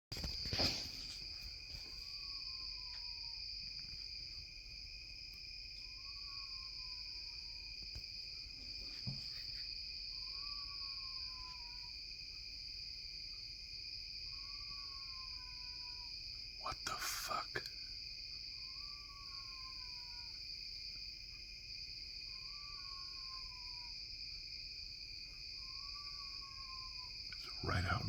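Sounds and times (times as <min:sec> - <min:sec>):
crickets trilling: 0:00.1 - 0:28.0
faint animal call: 0:00.2 - 0:04.1, 0:05.7 - 0:12.4, 0:14.2 - 0:20.5, 0:22.0 - 0:24.2, 0:25.2 - 0:28.0.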